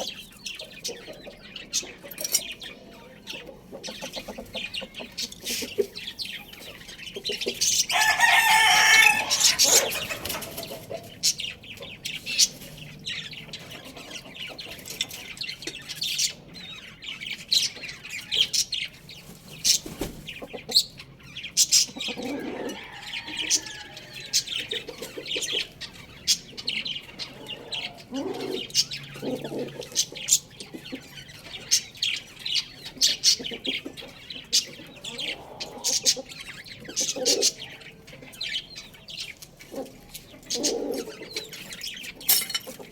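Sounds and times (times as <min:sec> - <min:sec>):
chickens clucking: 0:00.0 - 0:42.9
rooster crowing: 0:07.9 - 0:10.1, 0:22.3 - 0:24.6.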